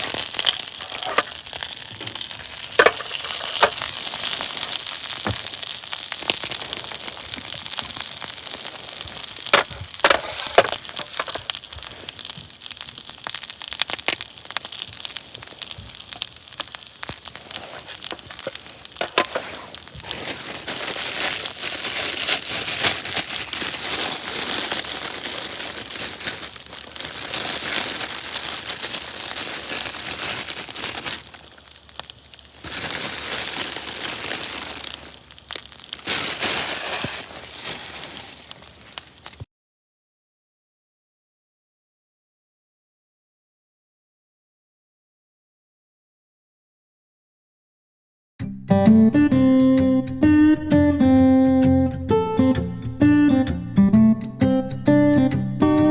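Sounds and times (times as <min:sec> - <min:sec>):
campfire crackling and popping: 0:00.0 - 0:39.5.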